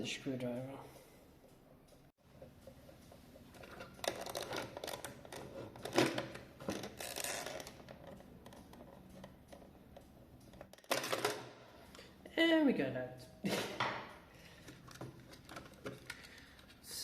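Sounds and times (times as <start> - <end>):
screwdriver and plastic clock parts clicking: 2.4 - 12.1, 14.5 - 16.9.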